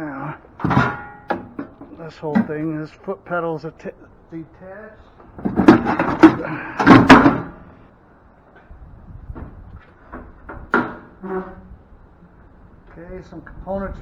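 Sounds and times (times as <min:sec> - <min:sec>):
metal parts clanking and rattling: 0:00.5 - 0:02.8, 0:05.2 - 0:07.8.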